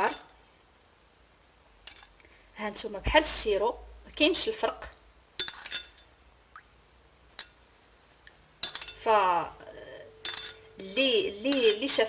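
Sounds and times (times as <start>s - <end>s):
utensil clinking against dish: 10.2s - 10.7s.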